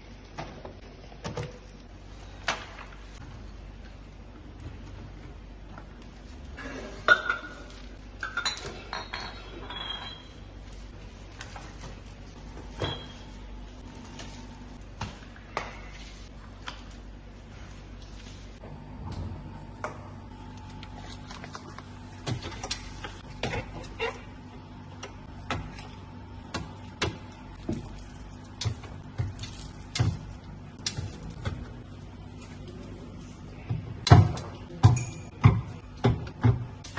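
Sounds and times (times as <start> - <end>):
dishes clinking and knocking: 7.0 - 10.4
objects knocking and clunking: 33.6 - 36.9.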